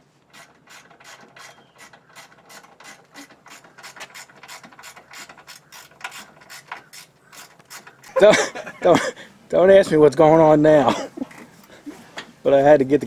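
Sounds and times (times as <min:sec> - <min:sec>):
ratchet wrench clicking: 0:00.3 - 0:08.2.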